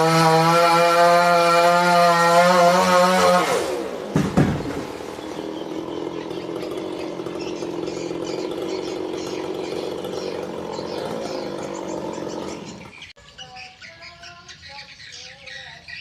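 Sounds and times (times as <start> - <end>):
chainsaw engine running: 0.0 - 13.1
birds chirping faintly: 4.6 - 16.0.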